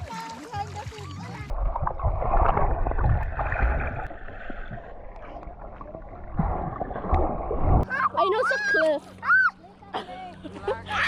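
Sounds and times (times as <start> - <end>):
water splashing and sloshing: 0.0 - 10.6
low rumble: 1.5 - 7.9.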